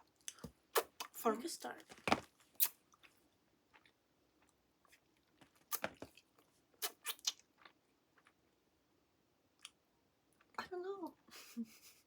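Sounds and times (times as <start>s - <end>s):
person chewing and crunching food: 1.8s - 8.5s.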